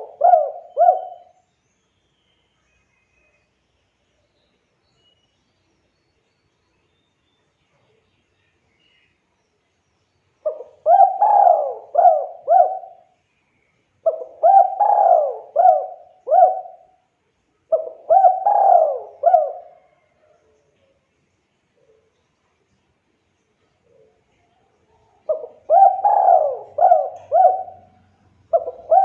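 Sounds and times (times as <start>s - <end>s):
dove cooing: 0.0s - 1.4s, 10.4s - 13.1s, 14.0s - 17.0s, 17.7s - 20.1s, 25.2s - 29.0s.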